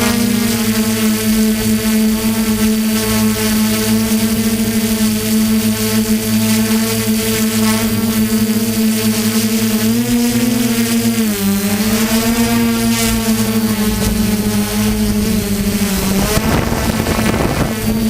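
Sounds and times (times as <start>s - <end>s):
drone propellers droning: 0.0s - 18.0s
wind noise: 11.3s - 18.0s.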